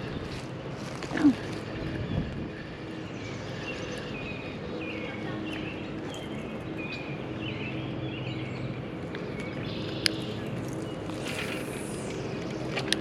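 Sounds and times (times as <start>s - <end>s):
wind noise: 0.0s - 6.9s
birds chirping: 0.0s - 13.0s.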